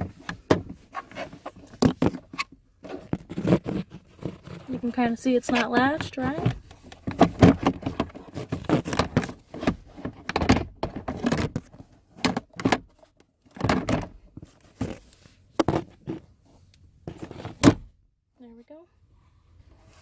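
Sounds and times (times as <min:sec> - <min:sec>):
plastic glove box door clunking: 0:13.5 - 0:14.2.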